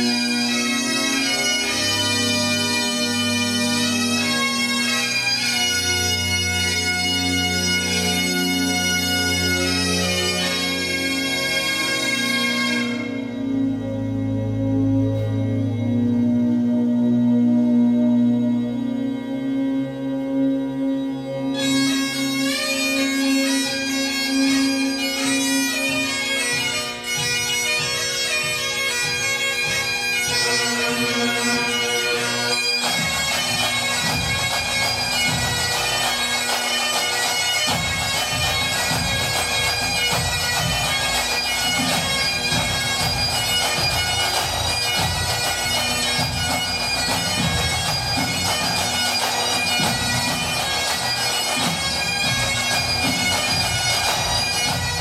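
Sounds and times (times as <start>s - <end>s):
bagpipes playing a tune: 0.0s - 55.0s
drums beating: 32.8s - 55.0s.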